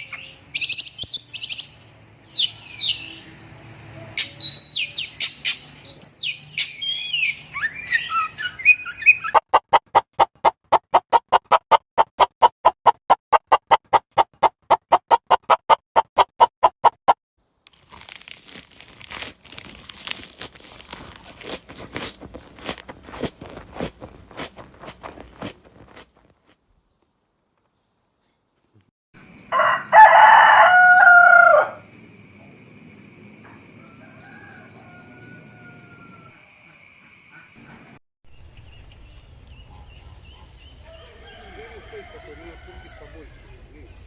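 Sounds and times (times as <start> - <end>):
small birds chirping: 0.0 - 3.3, 4.1 - 9.4
crunching crackling clicks: 17.6 - 27.8.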